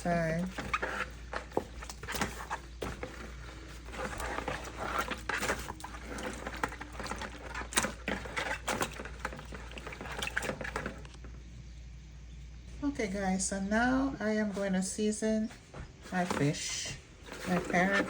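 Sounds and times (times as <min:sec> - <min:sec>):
wet splashes and squelches: 0:00.0 - 0:11.2.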